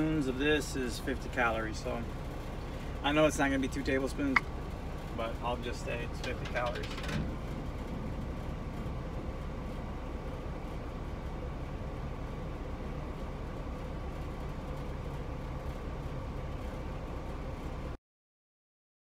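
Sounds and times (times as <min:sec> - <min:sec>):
air conditioning fan rumble: 0:00.0 - 0:18.0
faint steady hum: 0:00.0 - 0:18.0.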